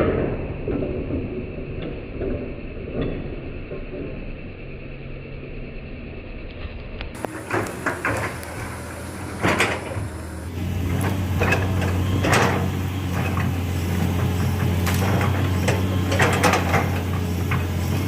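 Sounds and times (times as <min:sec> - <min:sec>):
excavator diesel engine running: 0:00.0 - 0:18.0
sharp knocks from excavator: 0:07.2 - 0:18.0.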